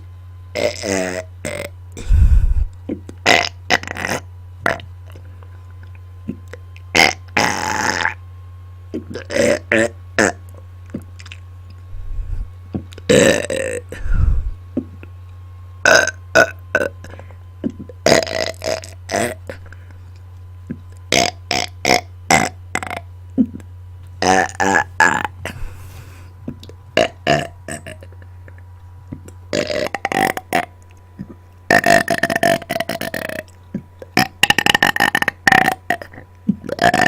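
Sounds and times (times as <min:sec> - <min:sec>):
steady low hum: 0:00.0 - 0:37.0
person belching: 0:00.6 - 0:02.1, 0:03.2 - 0:04.8, 0:06.9 - 0:08.2, 0:09.0 - 0:10.4, 0:13.1 - 0:14.3, 0:15.8 - 0:17.0, 0:17.6 - 0:19.6, 0:21.1 - 0:23.6, 0:24.2 - 0:25.8, 0:27.0 - 0:28.2, 0:29.5 - 0:30.7, 0:31.7 - 0:33.5, 0:34.1 - 0:37.0.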